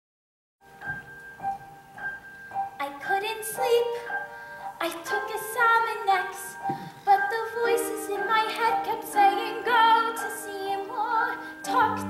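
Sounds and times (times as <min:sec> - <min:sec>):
woman singing with vibrato: 0:04.8 - 0:12.0
held accompaniment chords: 0:08.8 - 0:12.0.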